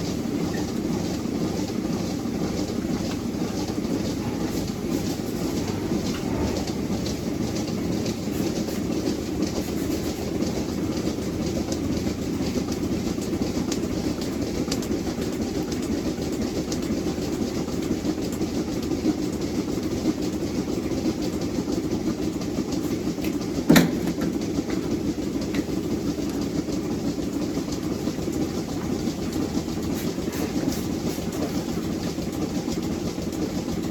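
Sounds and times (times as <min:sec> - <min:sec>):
heavy machinery rumbling: 0:02.0 - 0:16.3.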